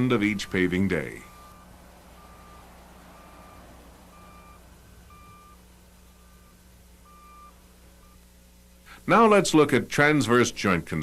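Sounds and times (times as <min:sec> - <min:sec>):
reversing alarm beeping: 0:00.0 - 0:08.3
low engine hum: 0:00.0 - 0:09.0.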